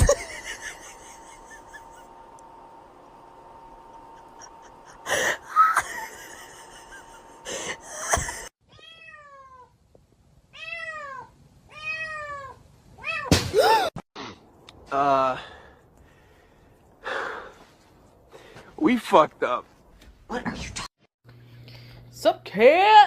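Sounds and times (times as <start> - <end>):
cat meowing: 8.7 - 9.7, 10.6 - 13.3.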